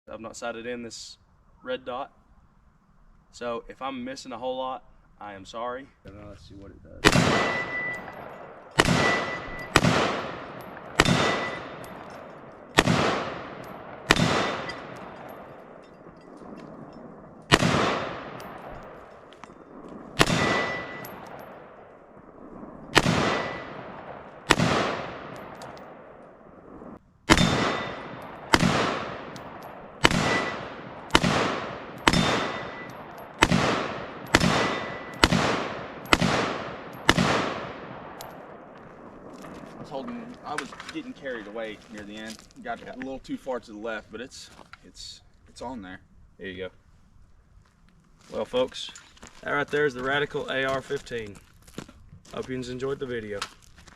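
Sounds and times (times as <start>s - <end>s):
rifle shots echoing: 7.0s - 41.7s
high metallic ring: 7.4s - 8.2s, 9.0s - 9.8s, 11.0s - 12.4s, 20.4s - 21.4s, 30.2s - 30.7s, 32.0s - 33.2s, 34.3s - 35.3s.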